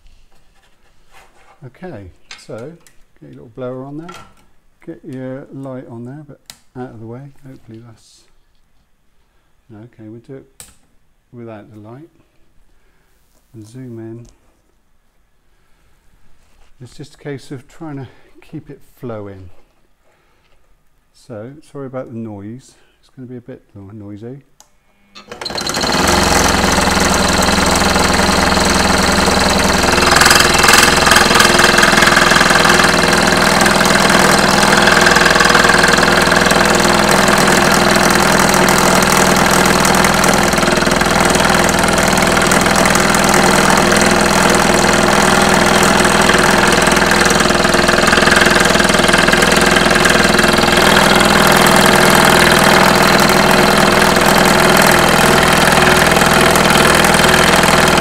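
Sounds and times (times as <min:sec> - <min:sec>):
scroll saw cutting wood: 0:25.2 - 0:58.0.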